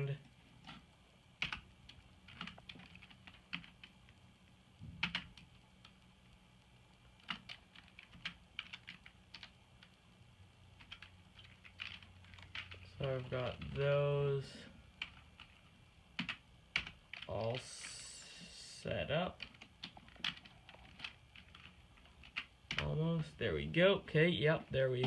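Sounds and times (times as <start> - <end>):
typing on computer keyboard: 1.4 - 4.2, 5.0 - 6.0, 7.2 - 10.0, 10.8 - 13.8, 15.0 - 17.6, 19.3 - 23.0.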